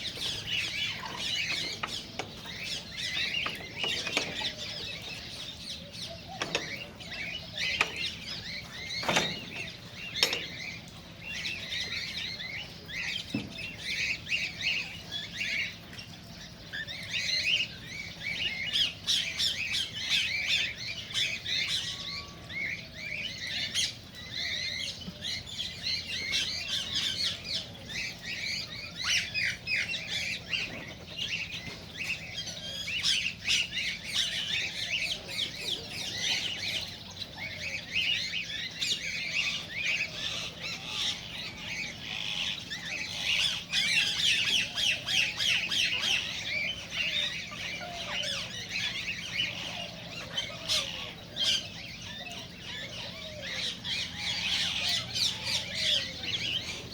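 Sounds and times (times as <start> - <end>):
cockatiels chirping and squawking: 0.0 - 56.9.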